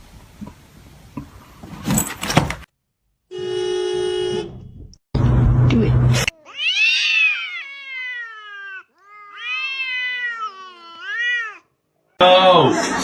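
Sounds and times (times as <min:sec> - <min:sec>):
cat yowling: 0:06.3 - 0:11.7.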